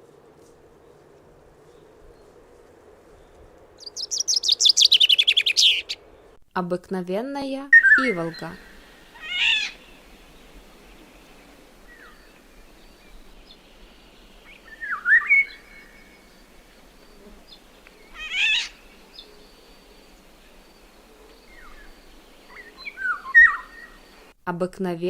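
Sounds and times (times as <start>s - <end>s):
harsh rasping bird call: 3.9s - 6.0s, 7.8s - 10.2s, 14.4s - 16.3s, 17.5s - 20.0s, 21.5s - 24.0s
oriole whistled phrases: 7.7s - 8.6s.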